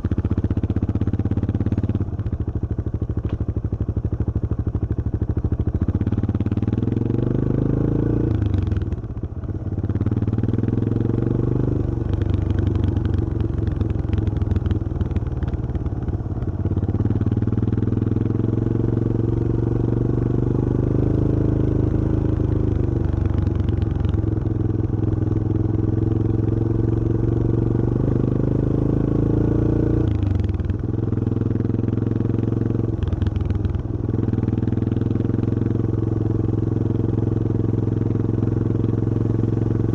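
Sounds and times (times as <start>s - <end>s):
motorcycle engine shifting up: 0.0s - 6.8s.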